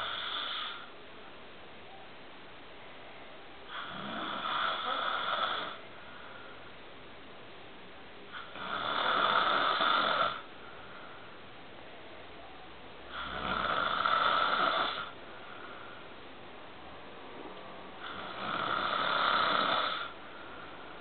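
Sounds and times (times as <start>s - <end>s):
man snoring: 0.0s - 0.9s, 3.7s - 5.8s, 8.3s - 10.5s, 13.1s - 15.2s, 18.0s - 20.2s.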